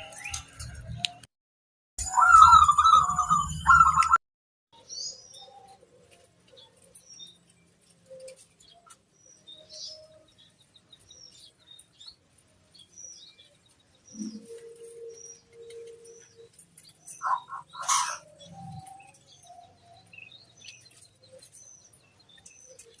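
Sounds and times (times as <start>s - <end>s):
doves calling: 2.0s - 4.2s, 13.0s - 23.0s.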